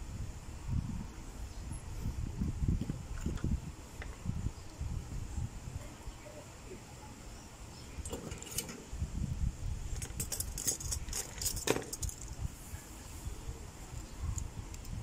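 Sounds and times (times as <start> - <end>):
small metal objects clinking: 10.0 - 12.3.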